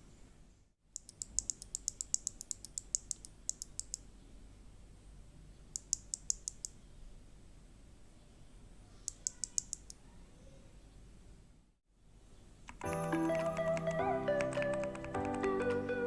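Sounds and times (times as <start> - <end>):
mechanical keyboard typing: 1.0 - 4.0, 9.1 - 10.0, 12.7 - 16.0.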